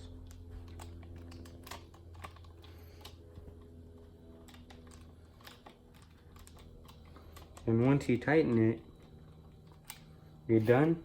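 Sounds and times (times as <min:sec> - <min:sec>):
low steady hum: 0:00.0 - 0:11.0
screwdriver clicks and taps: 0:00.2 - 0:07.7.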